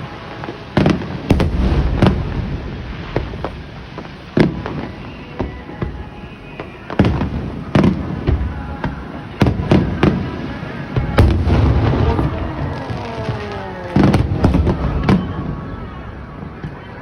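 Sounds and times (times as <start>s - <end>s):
fireworks bursting: 0.0s - 17.0s.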